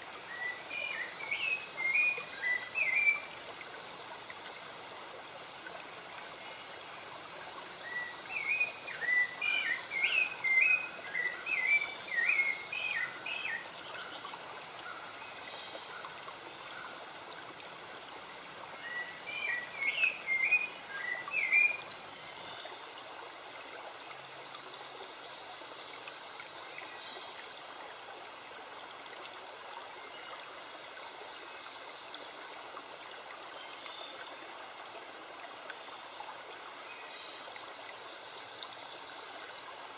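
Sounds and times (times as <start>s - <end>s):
running water: 0.0s - 39.9s
songbird warbling: 18.8s - 21.8s.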